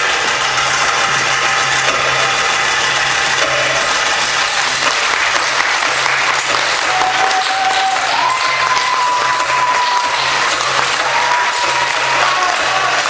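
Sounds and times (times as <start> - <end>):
audience applauding: 3.8 - 13.0.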